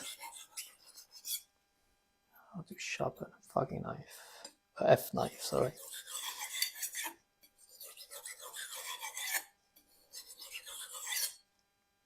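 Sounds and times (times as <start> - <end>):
knife scraping on whetstone: 0.0 - 1.5, 5.3 - 11.4.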